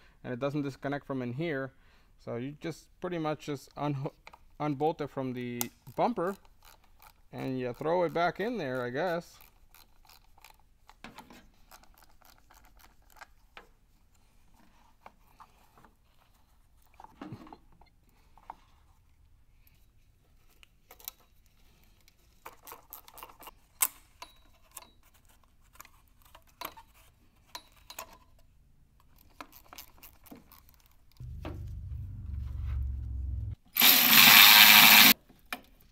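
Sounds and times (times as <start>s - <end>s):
power tool running: 31.2s - 35.2s.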